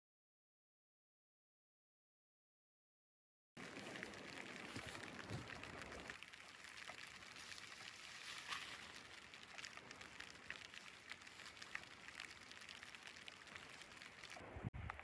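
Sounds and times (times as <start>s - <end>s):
light rain pattering: 3.6s - 15.0s
drip ticks: 3.7s - 15.0s.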